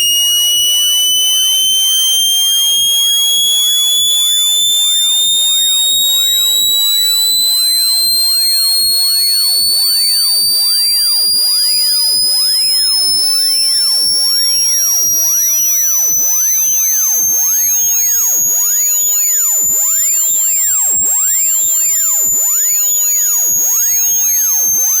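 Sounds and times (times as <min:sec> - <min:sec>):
high-pitched electronic tone: 0:00.0 - 0:16.8.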